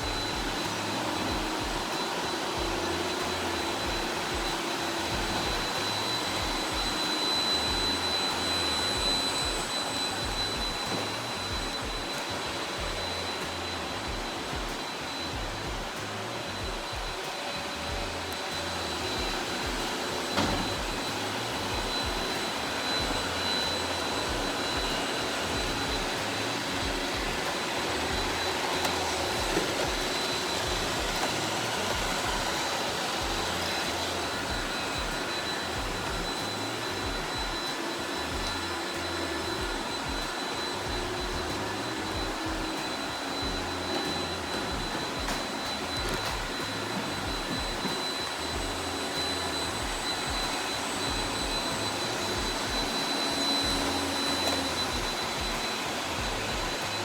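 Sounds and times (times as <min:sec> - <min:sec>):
high whine: 0:00.0 - 0:57.0
robot vacuum whirring: 0:00.0 - 0:57.0
knock: 0:20.4 - 0:21.0.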